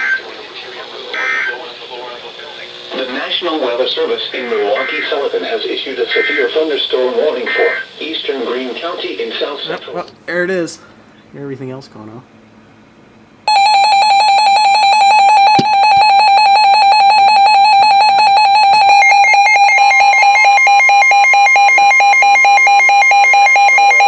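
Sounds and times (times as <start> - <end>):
higher-pitched second alarm: 13.5 - 24.0
rapidly pulsing alarm beep: 13.5 - 24.0.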